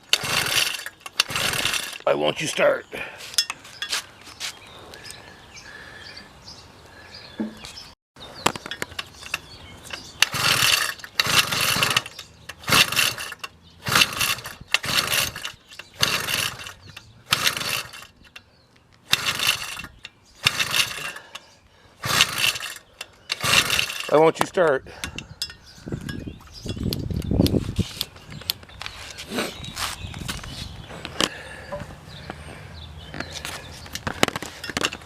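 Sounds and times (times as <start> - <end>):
two-stroke engine failing to start: 0.0 - 2.6, 8.9 - 18.4, 19.1 - 25.3.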